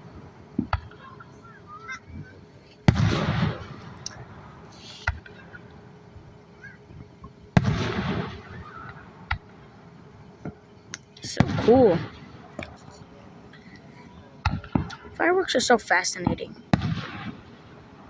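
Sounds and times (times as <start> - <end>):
firework pops: 2.8 - 4.2.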